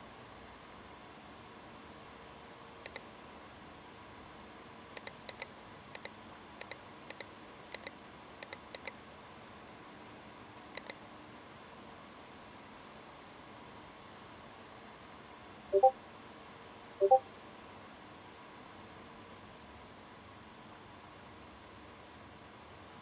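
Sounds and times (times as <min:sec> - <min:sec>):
small sharp clicks: 0:05.0 - 0:09.0, 0:10.8 - 0:11.0.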